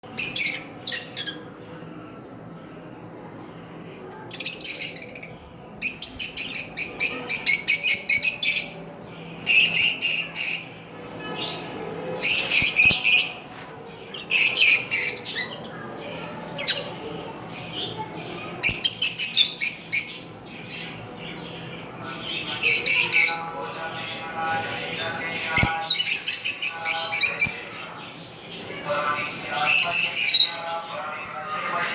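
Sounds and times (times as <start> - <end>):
parrot squawking and chattering: 22.4 - 23.4.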